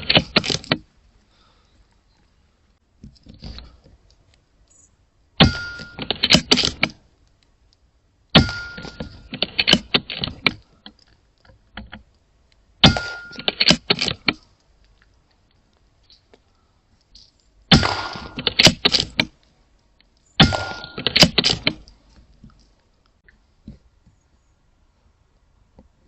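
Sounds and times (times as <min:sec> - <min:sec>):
air rifle shots: 0:17.7 - 0:19.2, 0:20.4 - 0:21.8.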